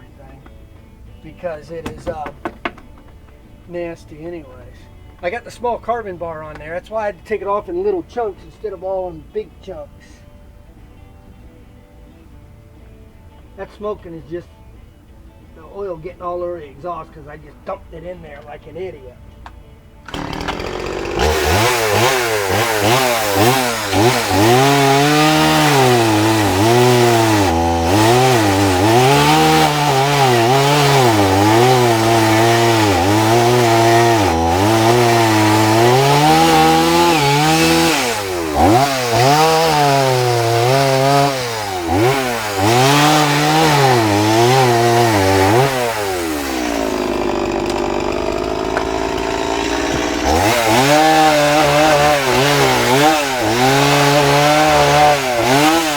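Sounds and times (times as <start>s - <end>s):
chainsaw cutting wood: 1.8s - 3.4s, 20.0s - 55.9s.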